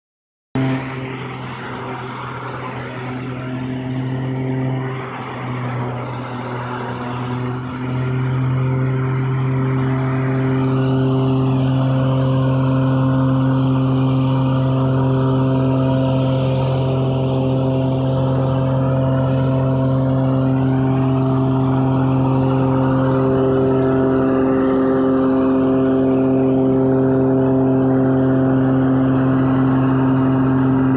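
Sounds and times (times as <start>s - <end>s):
wood chipper droning: 0.6s - 30.9s.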